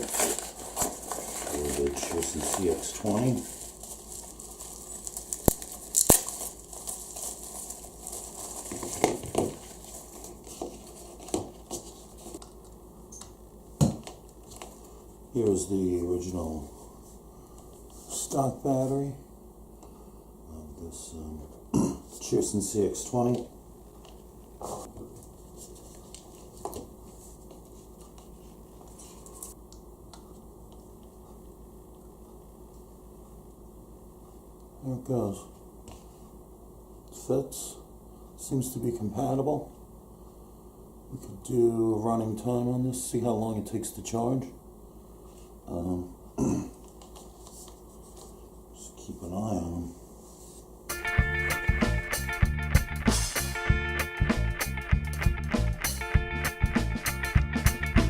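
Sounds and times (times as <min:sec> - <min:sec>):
packaging crinkling and rustling: 0:00.0 - 0:12.6
steady low hum: 0:00.0 - 0:58.0.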